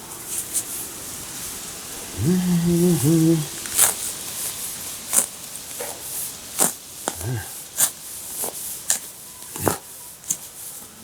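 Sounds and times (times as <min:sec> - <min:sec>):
man humming: 0:02.0 - 0:03.7, 0:07.2 - 0:07.6.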